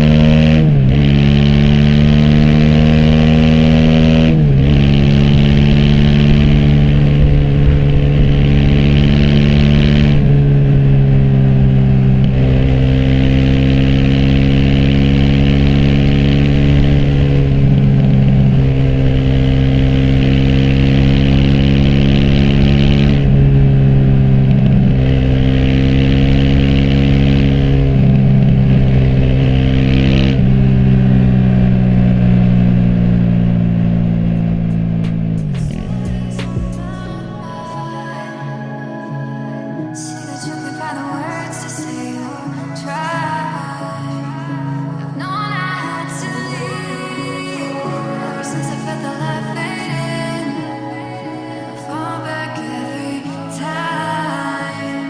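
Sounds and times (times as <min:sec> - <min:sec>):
motorcycle engine running: 0:00.0 - 0:37.7.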